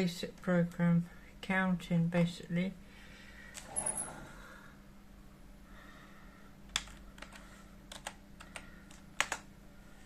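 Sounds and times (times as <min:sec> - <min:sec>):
low hum: 0:02.5 - 0:07.9
keyboard keystrokes: 0:06.7 - 0:09.5.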